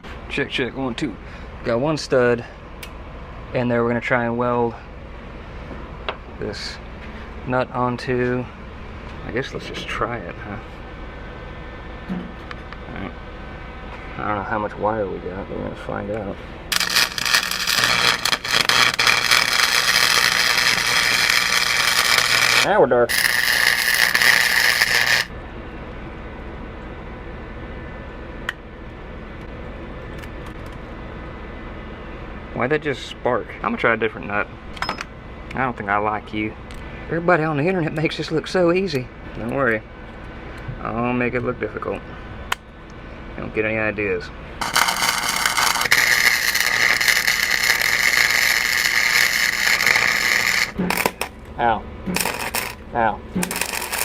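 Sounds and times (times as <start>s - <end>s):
low hum: 4.3s - 32.5s, 44.2s - 54.0s
welder arc crackling: 16.7s - 25.3s, 44.6s - 54.0s.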